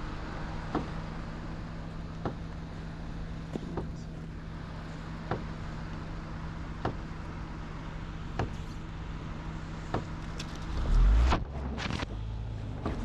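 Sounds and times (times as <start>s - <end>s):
car engine humming: 0.0s - 13.0s
soft engine knock: 0.6s - 1.1s, 2.1s - 4.3s, 4.9s - 6.0s, 6.7s - 7.2s, 8.3s - 8.8s, 9.8s - 10.7s.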